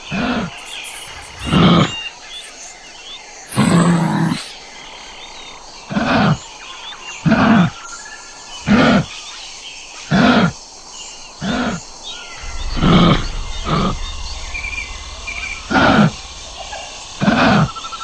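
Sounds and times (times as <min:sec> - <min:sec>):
faint birds chirping: 0:00.0 - 0:18.0
low rumble: 0:12.2 - 0:18.0.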